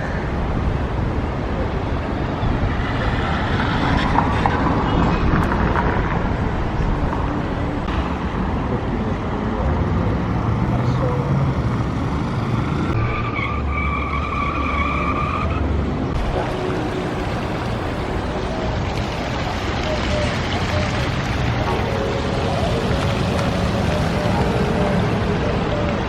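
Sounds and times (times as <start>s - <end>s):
city traffic cars driving by: 0.0s - 26.0s.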